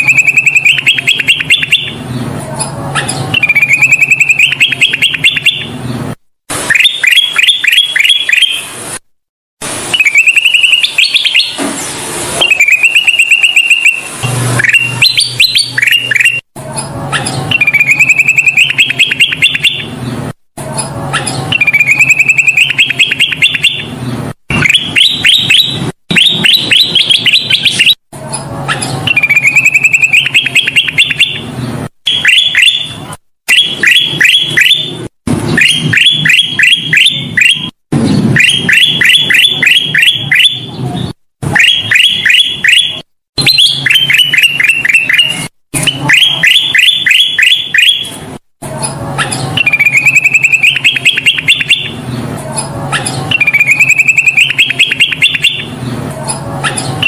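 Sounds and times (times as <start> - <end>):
bulbul singing: 0.0 - 5.9, 6.7 - 8.7, 9.9 - 11.6, 12.4 - 40.8, 41.6 - 48.2, 48.8 - 57.0.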